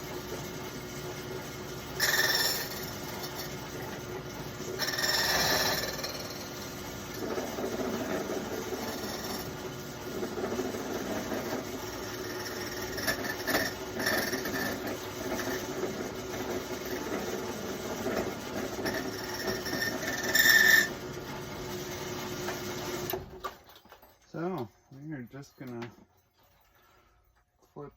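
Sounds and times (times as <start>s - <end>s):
key cutter rasping metal: 2.0s - 3.6s, 4.7s - 20.9s.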